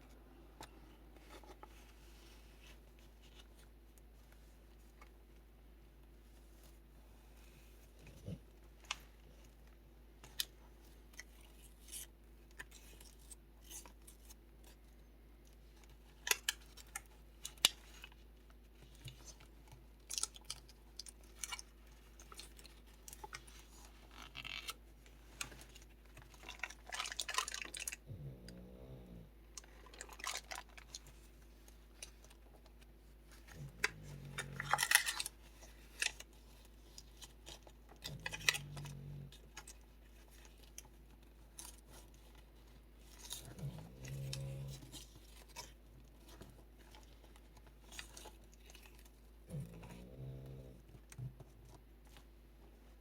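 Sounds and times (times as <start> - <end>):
dog snoring: 49.5 - 50.8.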